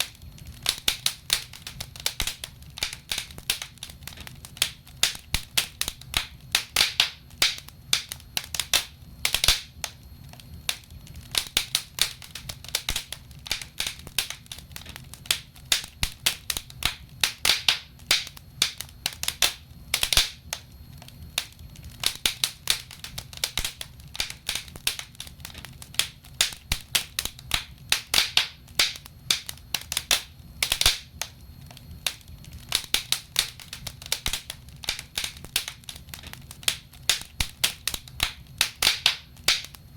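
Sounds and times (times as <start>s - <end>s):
logs crackling in fireplace: 0.0s - 39.9s.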